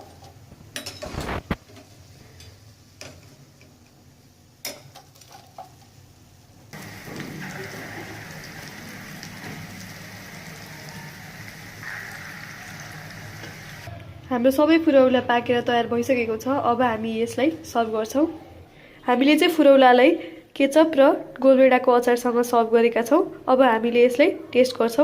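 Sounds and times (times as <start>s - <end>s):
oil sizzling loudly: 1.0s - 13.9s.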